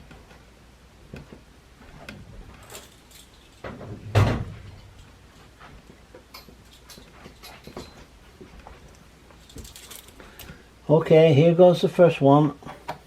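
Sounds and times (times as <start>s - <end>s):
loud thump: 3.9s - 4.7s
tools clicking and knocking: 6.1s - 10.6s.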